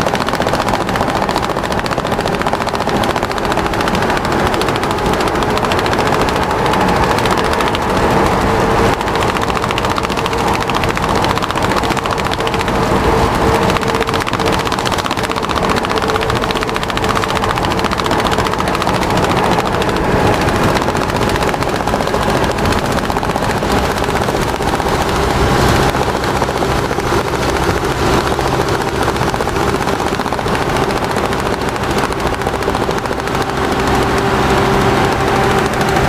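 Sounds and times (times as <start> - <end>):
strap flapping rattle: 0.0 - 36.0
truck engine running: 0.0 - 36.0.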